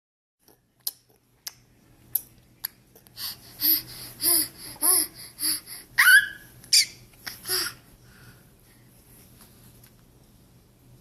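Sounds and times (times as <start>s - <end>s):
baby mouth clicks: 0.8s - 2.8s
baby babbling: 4.2s - 6.4s.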